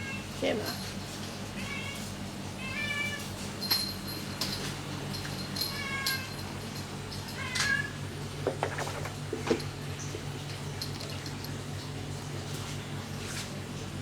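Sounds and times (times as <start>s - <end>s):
cat meowing: 2.6s - 3.3s, 5.7s - 6.3s, 7.4s - 8.0s.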